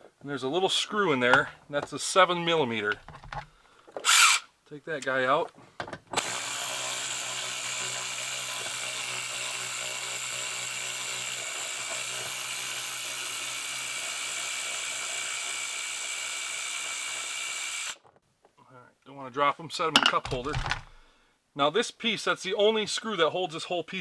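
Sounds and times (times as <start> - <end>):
cordless power tool running: 6.2 - 16.0, 20.3 - 21.0.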